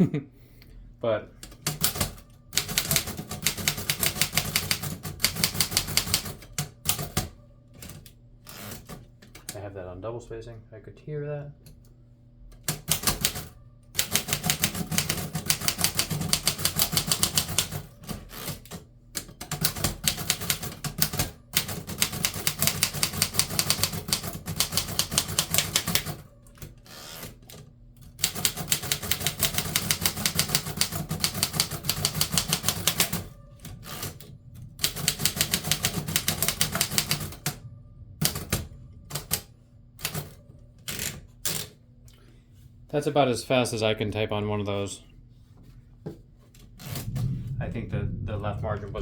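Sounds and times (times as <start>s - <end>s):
manual typewriter typing: 1.4s - 9.6s, 12.6s - 37.6s, 38.2s - 41.7s.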